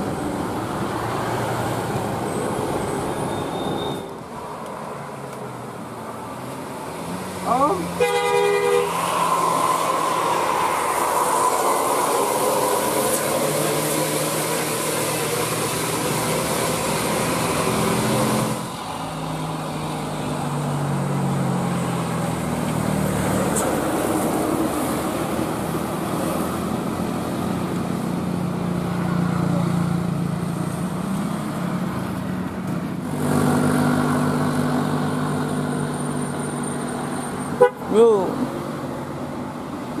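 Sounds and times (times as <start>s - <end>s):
bus engine running: 0.0s - 40.0s
road noise: 0.0s - 40.0s
bus horn: 7.9s - 9.2s, 37.5s - 38.0s.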